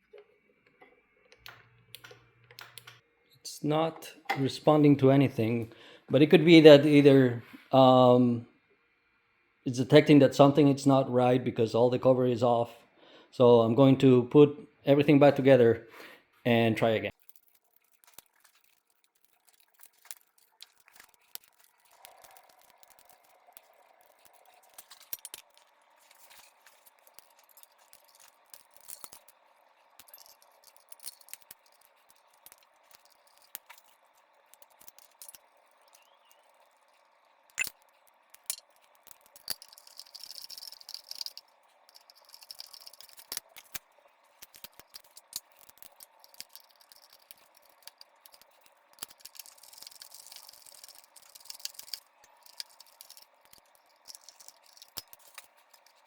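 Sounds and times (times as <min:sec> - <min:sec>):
faint steady hum: 0:00.0 - 0:17.4
parts clicking and rattling: 0:00.1 - 0:03.0, 0:17.1 - 0:56.0.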